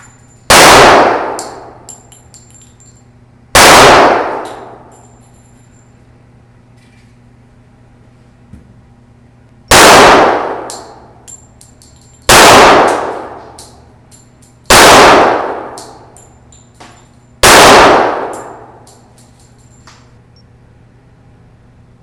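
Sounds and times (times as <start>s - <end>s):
handgun shots echoing: 0.5s - 1.9s, 3.6s - 4.9s, 9.7s - 11.1s, 12.3s - 13.8s, 14.7s - 16.2s, 17.4s - 19.1s
sharp metallic clinks: 1.8s - 3.1s, 4.4s - 6.0s, 10.7s - 12.3s, 13.5s - 14.7s, 15.8s - 17.4s, 18.3s - 20.1s.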